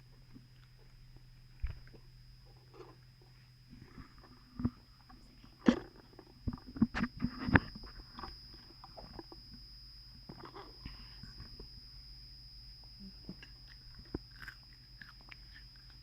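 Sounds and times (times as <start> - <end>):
chewing: 13.3 - 16.0
crunchy bites: 13.3 - 16.0.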